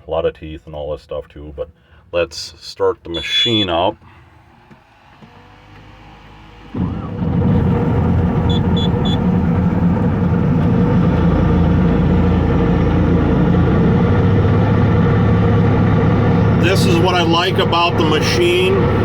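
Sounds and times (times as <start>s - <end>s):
diesel engine starting and running: 3.1s - 19.0s
short high beeps: 3.2s - 3.8s.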